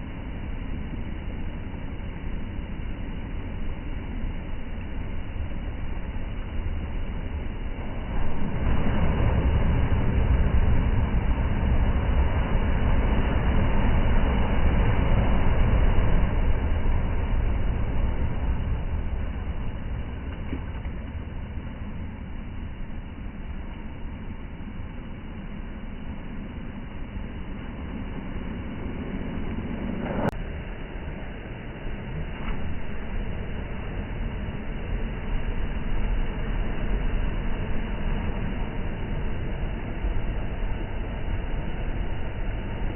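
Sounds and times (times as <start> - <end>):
wind buffeting microphone: 4.1 - 42.9.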